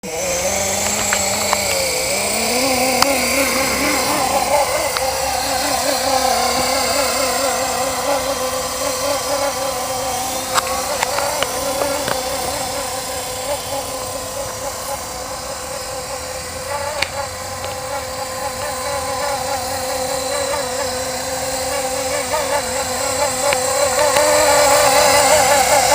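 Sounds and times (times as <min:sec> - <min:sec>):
rc helicopter rotor whine: 0:00.0 - 0:25.9
sharp clicks: 0:00.6 - 0:05.2.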